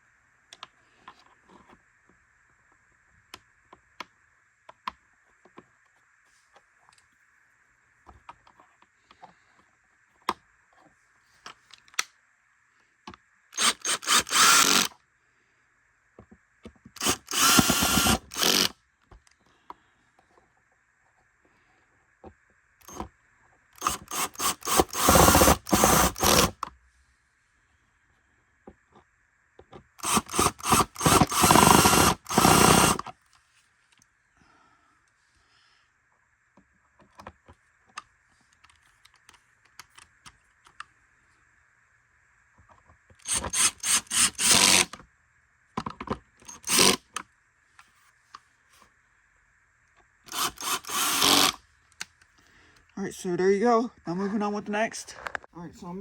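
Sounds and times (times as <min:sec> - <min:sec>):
cordless drill driving screws: 0:13.6 - 0:14.9, 0:17.0 - 0:18.7, 0:23.8 - 0:26.6, 0:30.0 - 0:33.1, 0:43.2 - 0:44.9, 0:46.5 - 0:47.0, 0:50.3 - 0:51.6.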